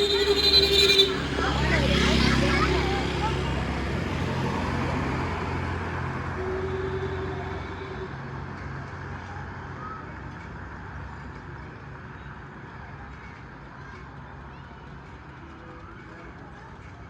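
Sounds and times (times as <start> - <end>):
vehicle engine passing: 0.0 - 9.1
street traffic noise: 0.0 - 17.0.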